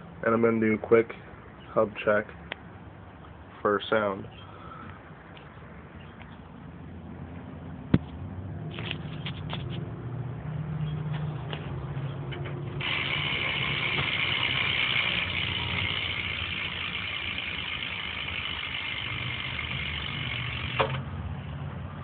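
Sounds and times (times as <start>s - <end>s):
bike hub ratcheting buzz: 12.4s - 21.1s.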